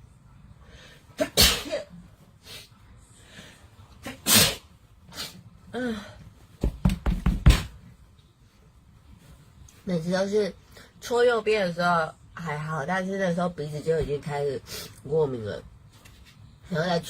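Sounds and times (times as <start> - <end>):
woman sneezing: 1.2 - 2.0, 4.0 - 5.4.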